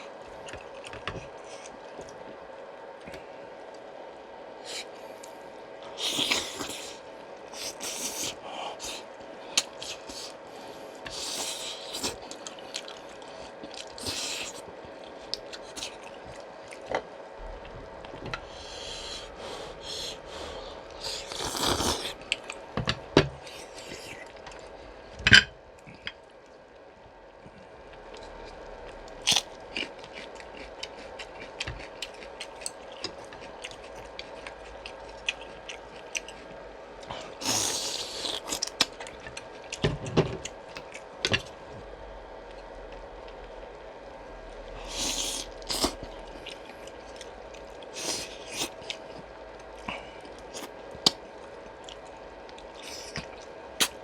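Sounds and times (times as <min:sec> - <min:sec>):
chewing and eating: 0:00.0 - 0:02.4, 0:04.6 - 0:43.8, 0:44.6 - 0:54.0.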